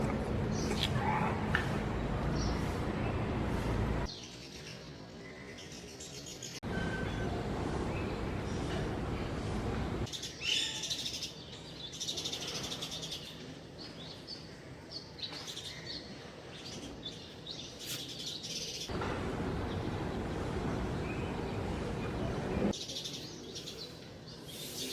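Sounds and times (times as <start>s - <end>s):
steady low background noise: 1.8s - 24.9s
small birds chirping: 10.0s - 24.9s.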